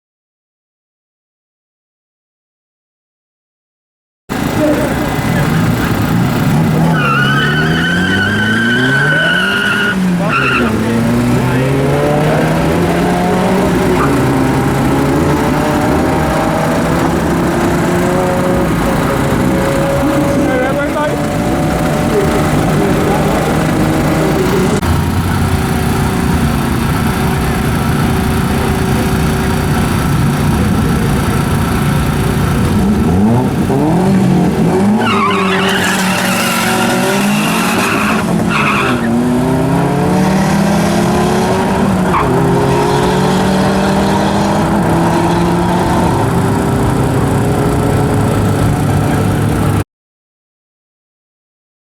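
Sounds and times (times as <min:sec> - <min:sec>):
car engine revving: 0:04.3 - 0:49.8
tyre squeal: 0:06.5 - 0:11.1, 0:34.8 - 0:39.2.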